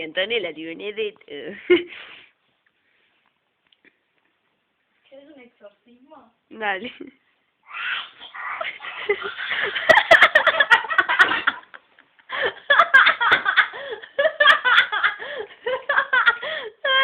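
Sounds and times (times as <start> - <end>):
people laughing hard: 8.6 - 17.0.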